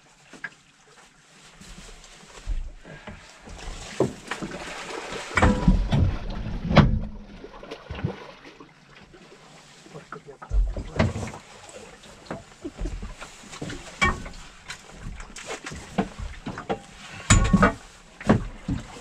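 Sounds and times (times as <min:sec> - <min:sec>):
gear knocking and thumping on boat: 0:02.4 - 0:07.4, 0:10.1 - 0:19.0.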